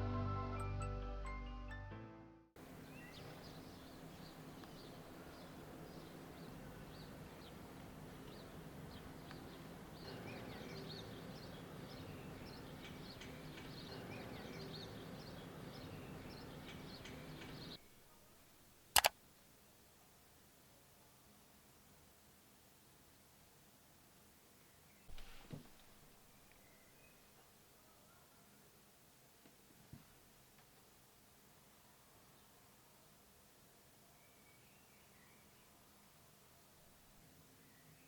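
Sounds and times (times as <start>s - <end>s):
small birds chirping: 2.6s - 18.2s, 26.0s - 28.5s, 34.1s - 38.0s
sharp double click: 18.9s - 19.2s.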